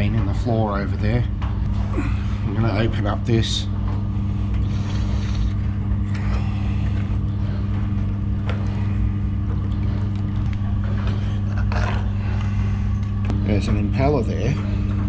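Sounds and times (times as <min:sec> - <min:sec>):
drain pump motor humming: 0:00.0 - 0:15.0.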